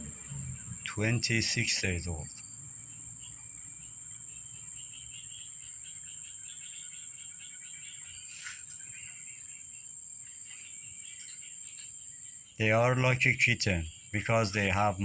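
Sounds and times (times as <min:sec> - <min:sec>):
high-pitched whine: 0:00.0 - 0:02.8
insects chirping: 0:00.0 - 0:15.0.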